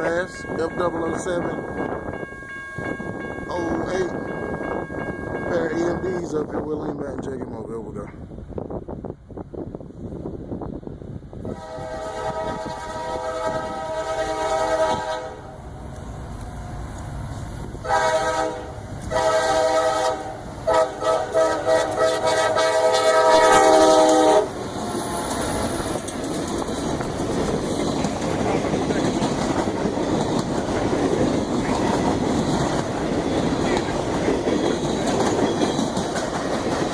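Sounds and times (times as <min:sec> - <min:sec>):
locomotive air horn blasts: 0:11.4 - 0:15.5, 0:17.8 - 0:25.3
train wheels clattering on rails: 0:23.4 - 0:36.9.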